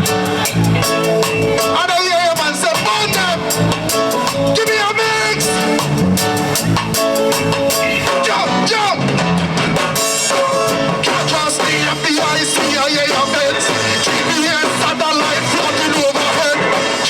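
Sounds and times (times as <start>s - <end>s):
live band music: 0.0s - 17.0s
person singing: 0.4s - 5.9s, 8.0s - 9.1s, 10.2s - 17.0s.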